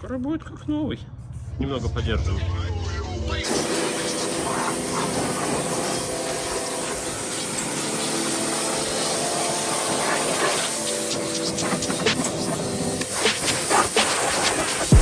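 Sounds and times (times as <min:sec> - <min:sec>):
vacuum cleaner running: 0:03.4 - 0:15.0.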